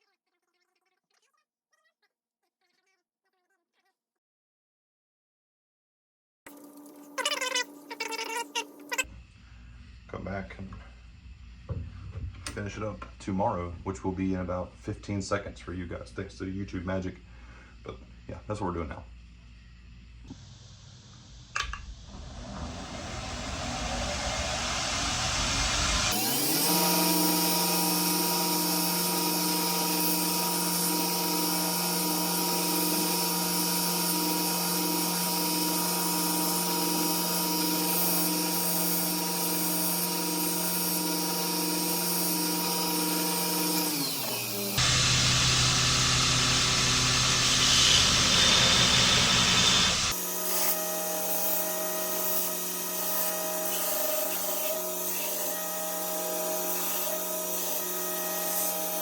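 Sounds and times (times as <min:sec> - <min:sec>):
electric power tool motor running: 0:22.4 - 0:59.0
grinding: 0:42.8 - 0:50.2.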